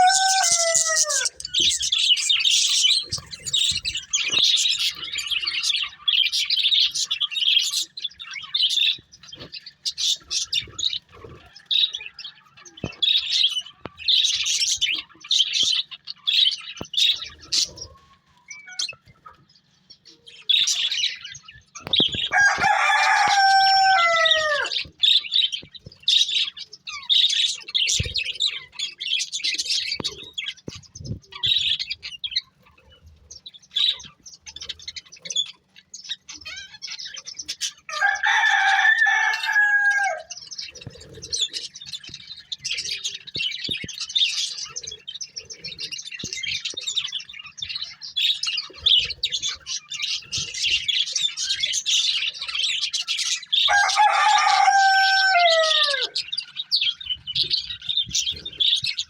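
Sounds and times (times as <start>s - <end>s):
budgerigars chirping: 0.0s - 59.0s.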